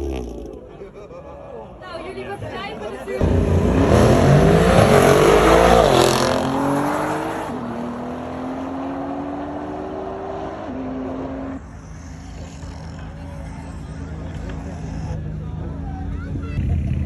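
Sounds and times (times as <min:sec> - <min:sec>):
car engine accelerating through gears: 0:03.2 - 0:11.7.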